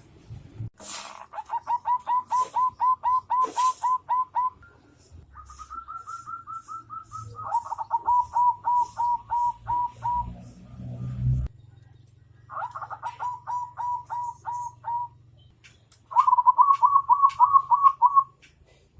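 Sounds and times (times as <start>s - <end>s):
bird calling in rapid runs: 12.4s - 18.4s.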